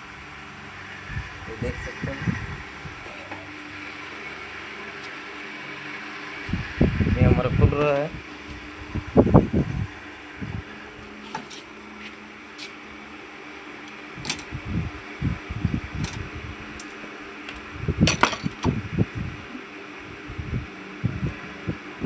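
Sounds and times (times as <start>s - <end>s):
cooling fan whirring: 0.0s - 22.0s
screwdriver clicking on metal case: 14.2s - 14.5s.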